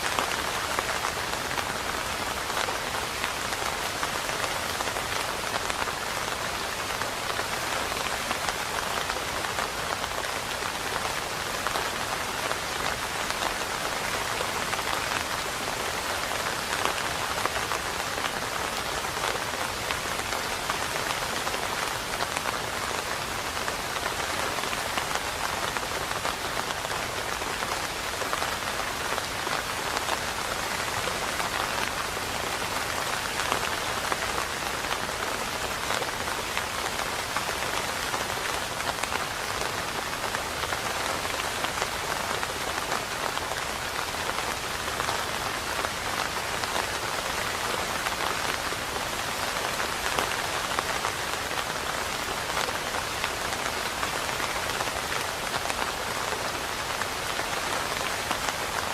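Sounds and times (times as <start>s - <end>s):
steady rain patter: 0.0s - 58.9s.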